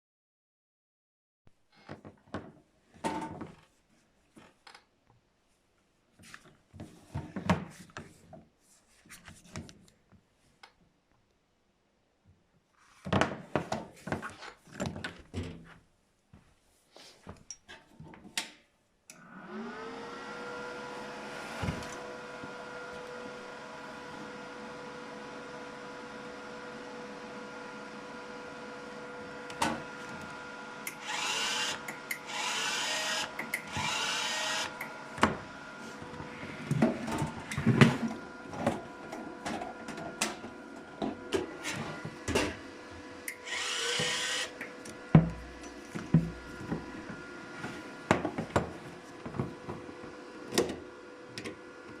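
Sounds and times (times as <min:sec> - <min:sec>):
welder cooling fan humming: 0:19.5 - 0:52.0.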